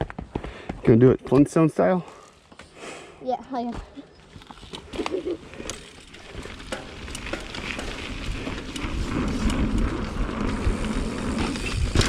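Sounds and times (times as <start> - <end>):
bike and gravel clicks and rattles: 4.1 - 12.0
bicycle tyre rumble on dirt: 4.2 - 12.0.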